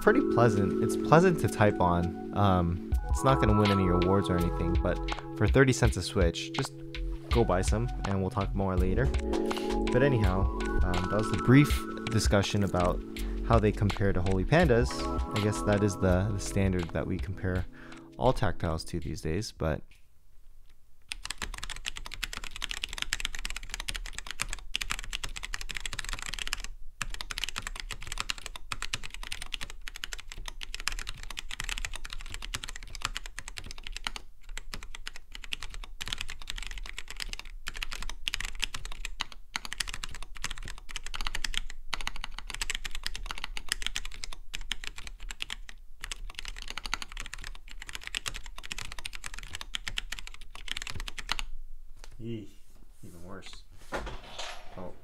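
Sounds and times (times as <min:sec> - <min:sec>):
mechanical keyboard typing: 0:08.8 - 0:12.9, 0:21.1 - 0:51.5.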